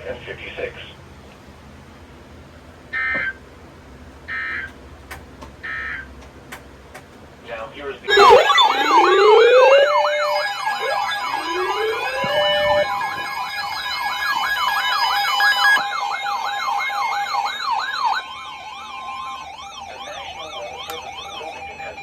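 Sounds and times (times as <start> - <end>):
siren sweeping up and down: 8.1 - 22.0
siren winding up: 8.1 - 22.0
steady alarm tones: 8.1 - 22.0.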